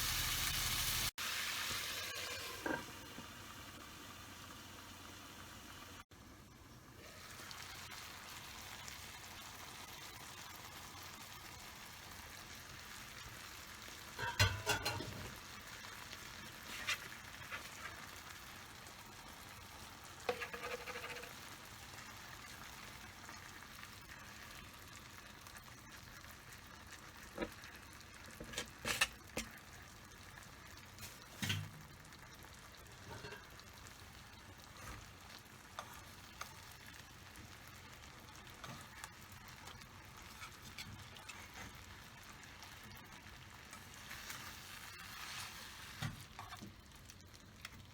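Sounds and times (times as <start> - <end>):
chicken sizzling in a pan: 0.0 - 47.9
utensil clacking and scraping pan: 14.2 - 15.4, 16.6 - 18.2, 20.2 - 21.5, 28.3 - 29.6, 33.0 - 33.8, 38.4 - 42.7.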